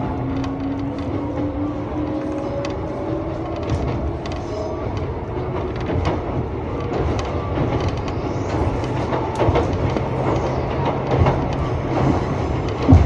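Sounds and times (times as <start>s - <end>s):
rail clicks and knocks: 0.0s - 13.0s
train wheels rumbling on track: 0.0s - 13.0s.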